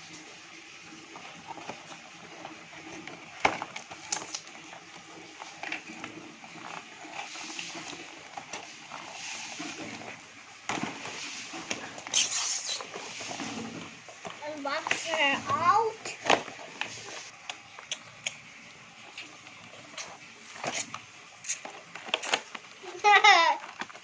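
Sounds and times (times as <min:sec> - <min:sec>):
cardboard and plastic crinkling: 0:00.5 - 0:24.0
packaging clicks: 0:01.2 - 0:09.1, 0:16.0 - 0:24.0.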